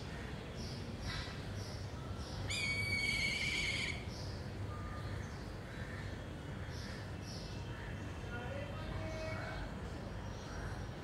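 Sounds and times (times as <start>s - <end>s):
bird of prey whistling call: 2.5s - 4.0s.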